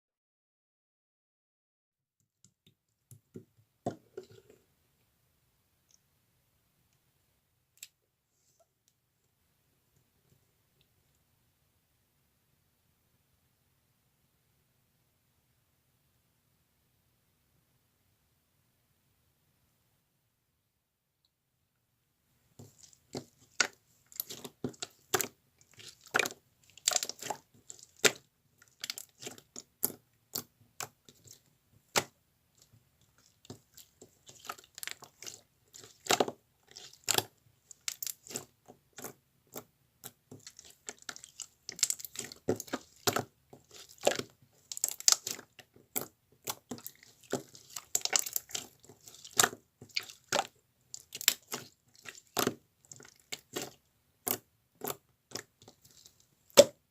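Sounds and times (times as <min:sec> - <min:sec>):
crackling and squishing: 0:22.4 - 0:56.9.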